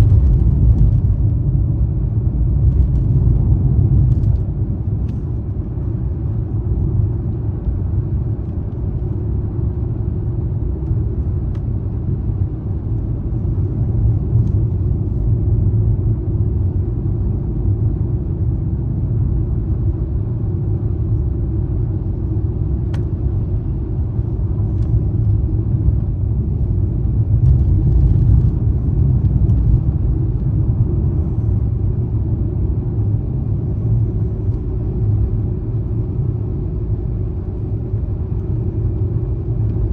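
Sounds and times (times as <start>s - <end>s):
car engine and tyre rumble: 0.0s - 39.9s.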